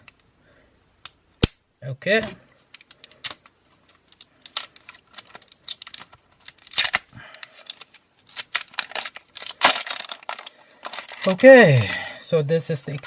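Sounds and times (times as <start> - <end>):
plastic packaging crinkling: 2.7 - 11.9
plastic ripping: 2.9 - 11.5.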